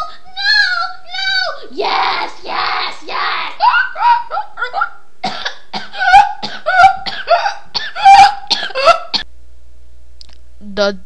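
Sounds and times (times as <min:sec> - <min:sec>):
person yelping: 0:00.0 - 0:05.0, 0:06.0 - 0:09.2.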